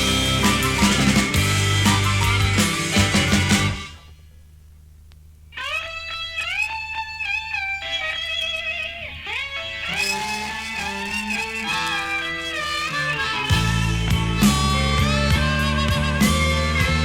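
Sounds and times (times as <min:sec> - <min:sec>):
blues-rock music from vinyl: 0:00.0 - 0:04.2, 0:05.6 - 0:17.0
electric guitar bent notes: 0:00.0 - 0:04.2, 0:05.6 - 0:17.0
low steady hum: 0:03.8 - 0:05.6.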